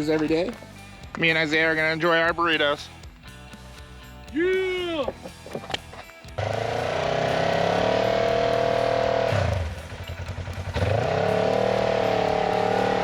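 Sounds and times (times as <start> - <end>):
engine revving under throttle: 6.4 - 13.0.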